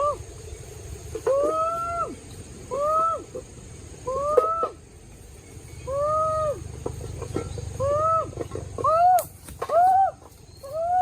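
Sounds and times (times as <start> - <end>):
animal calling: 1.1 - 4.8, 5.8 - 11.0.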